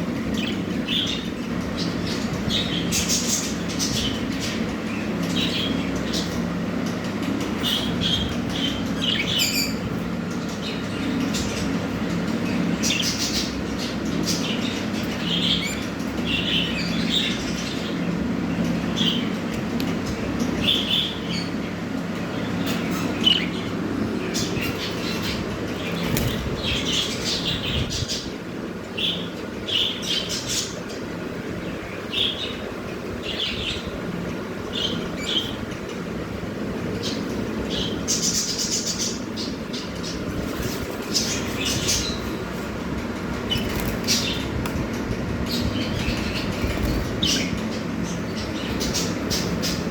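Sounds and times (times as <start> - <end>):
low background hum: 0.0 - 49.9
budgerigars chirping: 7.6 - 11.7, 12.4 - 18.1, 22.4 - 28.3, 43.3 - 44.9, 45.5 - 49.9
wing flutters: 40.4 - 47.8.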